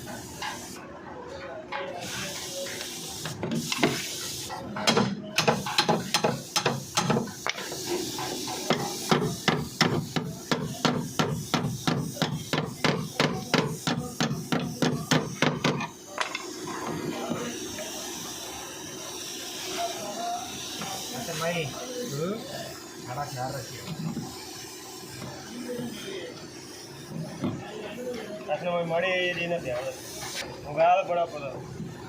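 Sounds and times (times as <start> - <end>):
hammer tapping sheet metal: 4.7 - 7.6.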